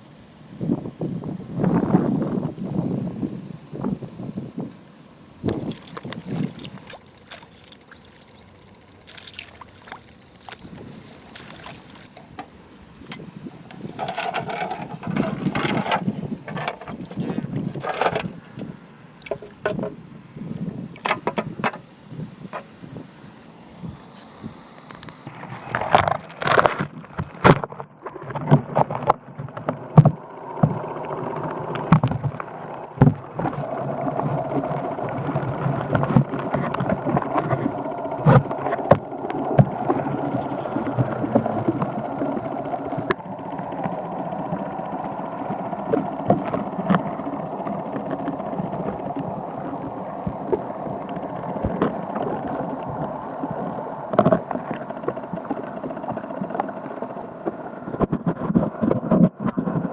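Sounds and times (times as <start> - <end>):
low moo-like underwater drone: 0.0 - 59.9
underwater clicks and knocks: 13.1 - 20.0, 21.0 - 21.9, 24.8 - 44.1, 45.8 - 53.4, 54.1 - 59.9.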